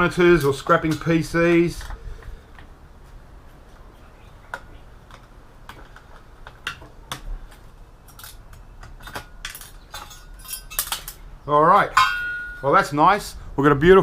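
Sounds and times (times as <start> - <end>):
small metal parts clicking and clinking: 0.1 - 1.1, 8.0 - 11.2.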